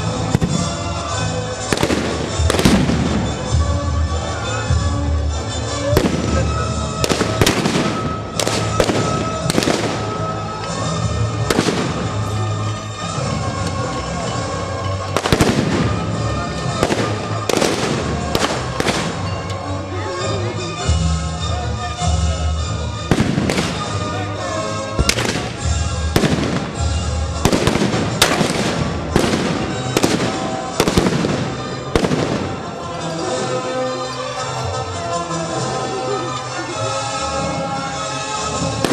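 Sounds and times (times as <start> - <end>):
background music: 0.0 - 38.9
gunshots cracking: 7.0 - 10.2, 11.5 - 12.2, 16.8 - 19.2, 23.1 - 24.0, 25.0 - 25.6, 26.2 - 32.7.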